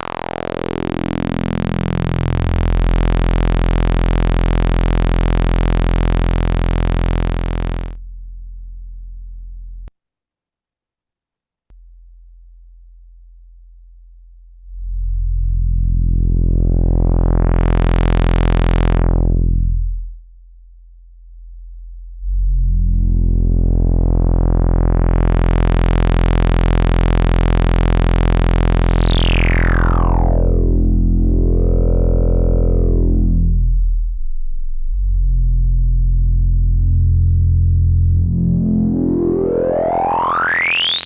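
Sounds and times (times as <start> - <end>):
buzzy synthesizer filter sweep: 0.0 - 8.0, 15.8 - 19.7, 22.3 - 41.0.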